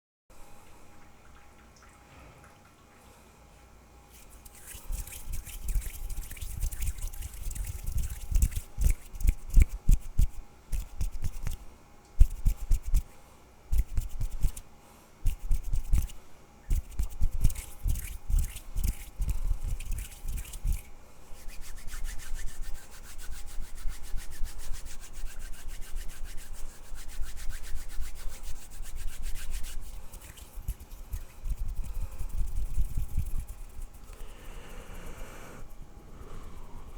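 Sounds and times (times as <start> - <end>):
hands rubbing near microphone: 4.1 - 13.1, 13.7 - 14.6, 15.3 - 34.6.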